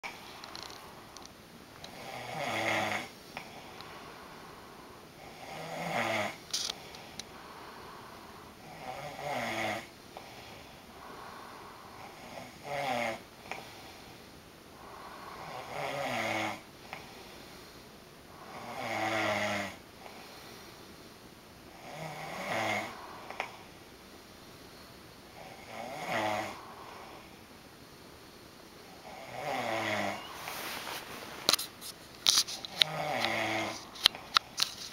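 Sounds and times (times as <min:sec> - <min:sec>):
quiet breathing: 0:00.0 - 0:34.9
man snoring: 0:01.9 - 0:04.2, 0:05.2 - 0:14.0, 0:14.8 - 0:16.7, 0:18.3 - 0:20.2, 0:21.7 - 0:23.7, 0:25.4 - 0:27.4, 0:28.9 - 0:30.6, 0:32.8 - 0:34.2.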